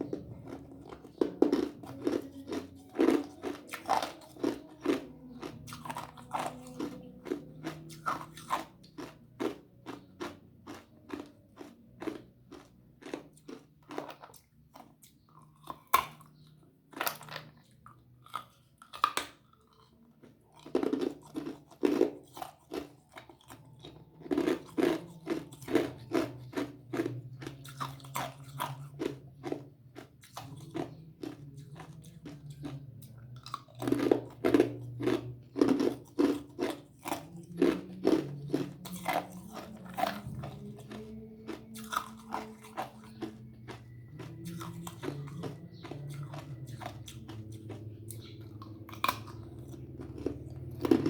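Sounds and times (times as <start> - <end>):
ice crunched between teeth: 0.8 - 29.6.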